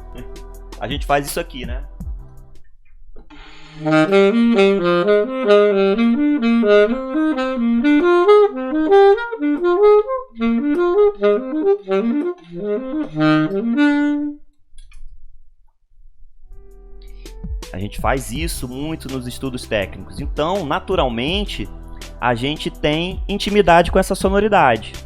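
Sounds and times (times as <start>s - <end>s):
saxophone playing fast runs: 3.8s - 14.4s.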